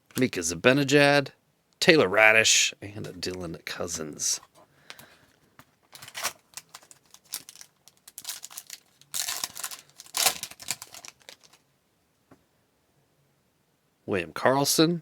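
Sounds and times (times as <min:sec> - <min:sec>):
card pack wrapper crinkling: 0:05.9 - 0:11.6
cards being handled: 0:05.9 - 0:11.6.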